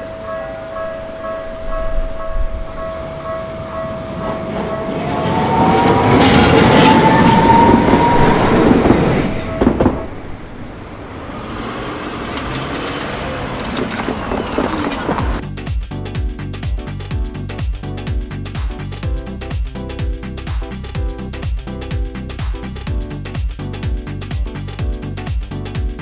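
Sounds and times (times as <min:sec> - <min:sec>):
train motor whine: 0:00.0 - 0:15.4
wheel clack over rails: 0:02.8 - 0:15.4.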